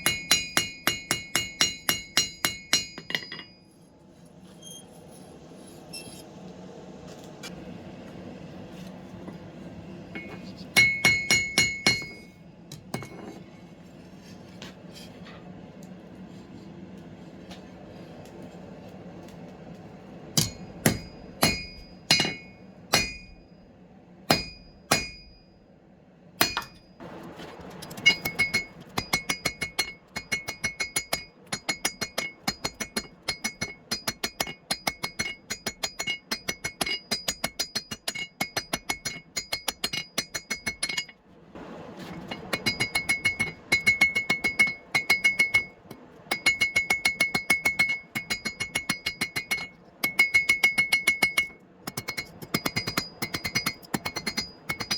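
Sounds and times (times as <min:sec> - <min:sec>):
hammer striking steel on anvil: 0:00.0 - 0:03.7, 0:10.2 - 0:13.4, 0:20.4 - 0:23.6, 0:24.3 - 0:25.6, 0:26.4 - 0:27.0, 0:27.8 - 0:41.2, 0:42.2 - 0:54.9.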